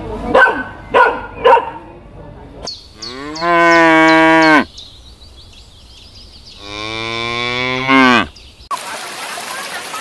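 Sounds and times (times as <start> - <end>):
cow mooing: 3.0 - 4.7, 6.6 - 8.4.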